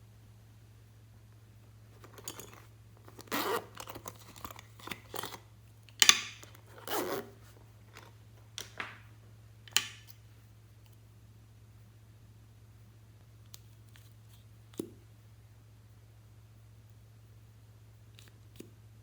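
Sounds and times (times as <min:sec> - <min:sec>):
faint low hum: 0:00.0 - 0:19.0.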